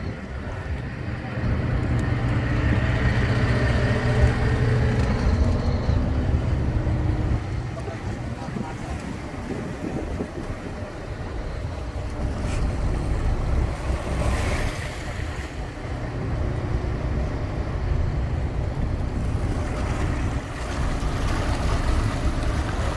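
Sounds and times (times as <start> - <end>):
boat engine rumble: 0.0 - 22.9
rushing water: 0.0 - 22.9
wind buffeting microphone: 0.0 - 22.9.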